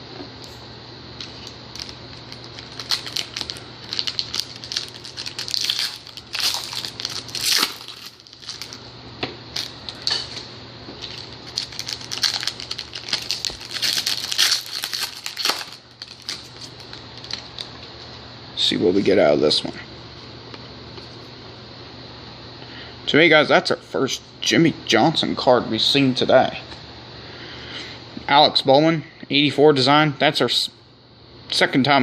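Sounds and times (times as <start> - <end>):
foil tearing: 1.2 - 8.8, 9.6 - 17.7
foil wrappers crinkling: 1.2 - 8.8, 9.5 - 18.1.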